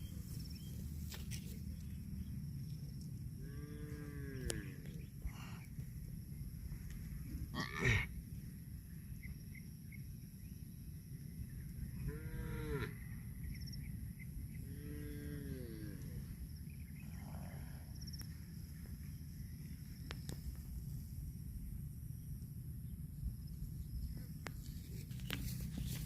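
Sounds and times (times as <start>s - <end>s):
cattle mooing: 12.0s - 13.0s, 14.7s - 16.2s.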